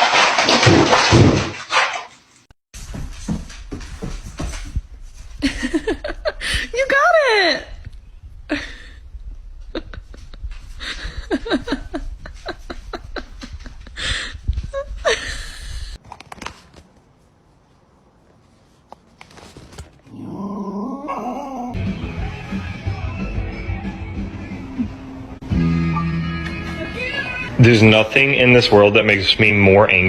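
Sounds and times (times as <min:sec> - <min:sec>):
dog whining: 0:20.1 - 0:21.8.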